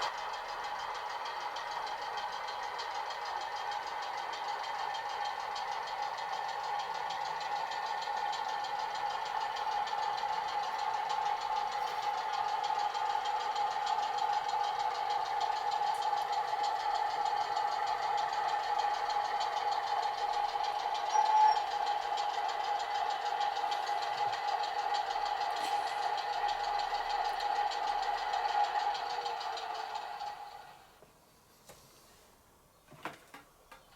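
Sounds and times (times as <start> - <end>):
diesel engine sound from speaker: 0.0 - 31.0.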